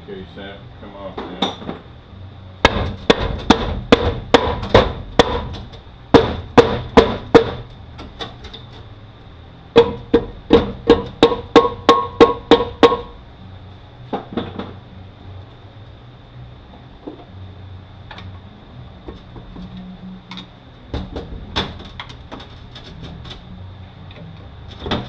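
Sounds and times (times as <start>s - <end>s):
hammer striking metal: 2.6s - 5.5s, 9.8s - 13.2s.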